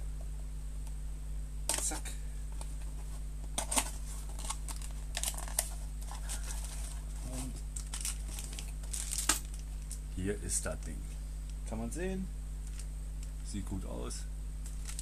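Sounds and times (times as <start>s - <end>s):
packaging rustling and crinkling: 2.8s - 10.0s, 14.6s - 15.0s.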